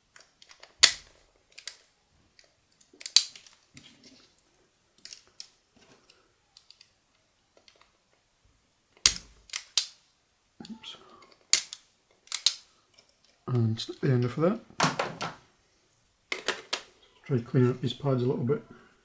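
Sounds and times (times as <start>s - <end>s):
hand tools snapping plastic casing: 3.0s - 3.6s, 9.0s - 10.0s, 11.4s - 12.7s.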